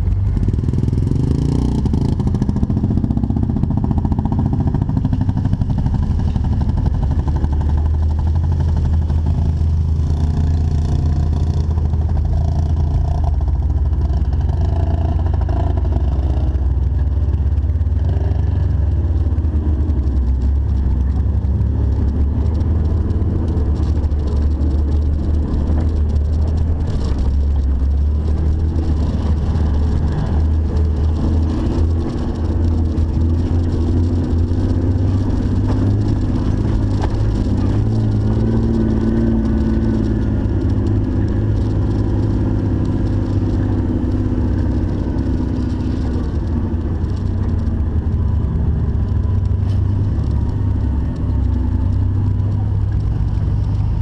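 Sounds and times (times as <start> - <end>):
car engine droning at low revs: 0.0 - 54.0.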